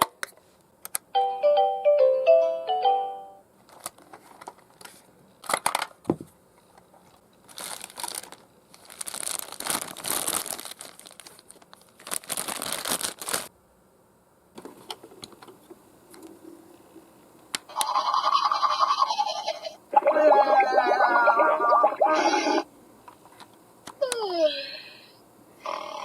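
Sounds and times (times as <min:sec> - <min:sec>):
packaging crinkling and tearing: 0:03.7 - 0:05.8, 0:07.4 - 0:13.5
packaging rustling: 0:07.4 - 0:13.5.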